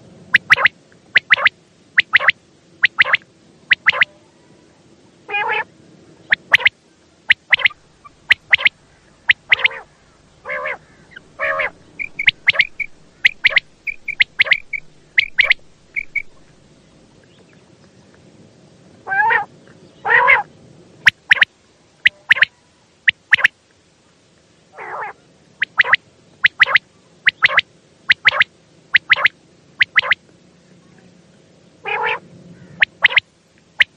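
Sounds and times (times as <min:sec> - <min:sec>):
quail calling: 0:00.3 - 0:04.2, 0:05.3 - 0:05.7, 0:06.3 - 0:16.6, 0:19.1 - 0:20.5, 0:21.1 - 0:23.5, 0:24.8 - 0:30.2, 0:31.8 - 0:33.9.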